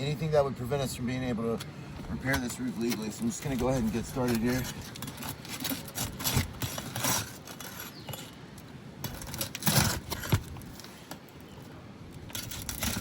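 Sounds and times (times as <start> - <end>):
tools scraping on shingles: 2.0 - 11.3, 12.2 - 13.0.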